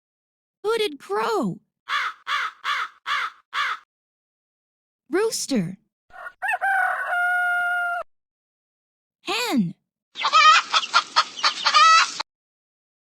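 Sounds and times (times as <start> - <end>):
crow cawing: 1.9 - 3.9, 6.1 - 8.0
rooster crowing: 6.1 - 8.1.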